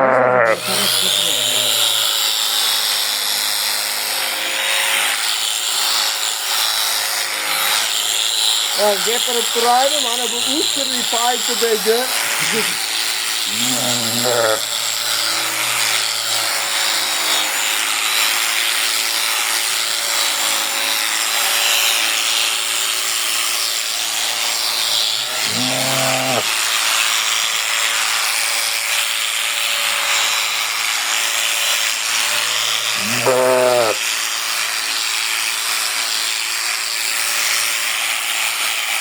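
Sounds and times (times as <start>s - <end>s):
sheep bleating: 0.0s - 2.0s, 13.4s - 14.8s, 25.4s - 26.5s, 33.0s - 34.0s
electric clippers buzzing: 0.0s - 39.0s.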